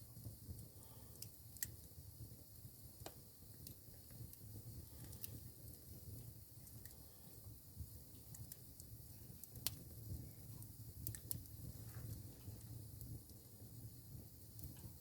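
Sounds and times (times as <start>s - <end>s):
campfire crackling: 0.0s - 15.0s.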